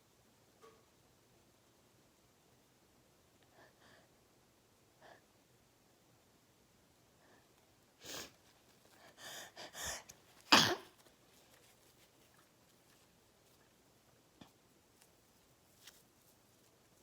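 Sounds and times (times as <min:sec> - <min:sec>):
person sneezing: 0:10.5 - 0:11.0.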